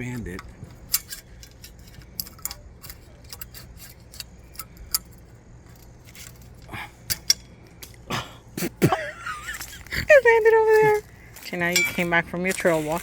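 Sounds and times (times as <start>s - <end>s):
metallic clicks and clinks: 0.0s - 8.0s, 10.8s - 12.2s.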